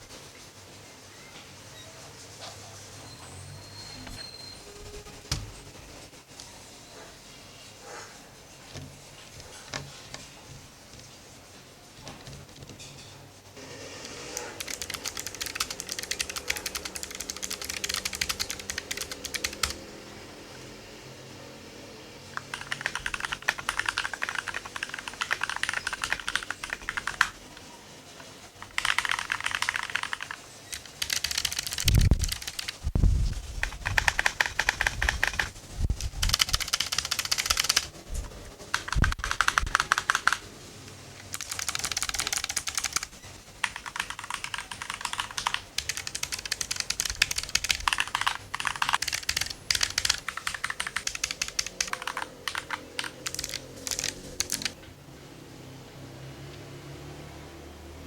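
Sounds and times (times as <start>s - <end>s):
mechanical keyboard key clicks: 14.6s - 19.8s, 41.4s - 43.1s, 43.7s - 54.8s.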